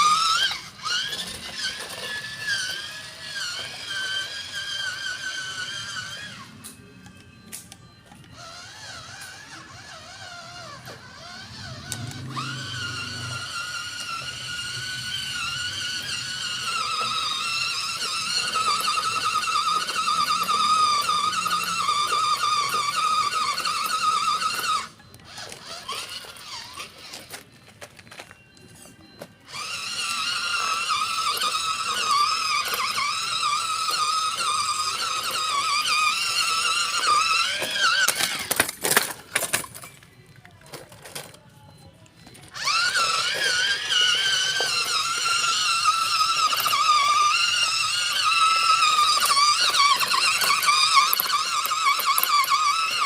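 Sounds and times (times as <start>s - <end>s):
rc truck motor whining: 0.0s - 53.0s.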